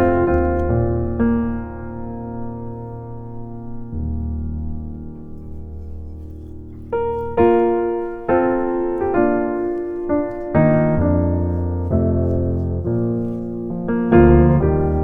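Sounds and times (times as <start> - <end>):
slow piano chords: 0.0 - 15.0.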